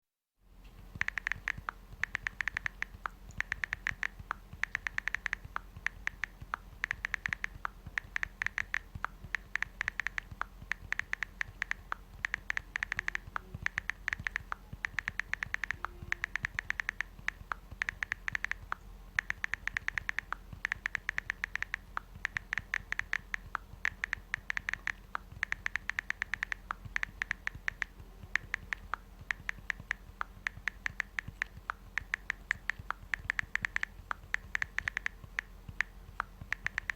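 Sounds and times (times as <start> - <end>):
phone keyboard typing clicks: 0.7 - 36.9.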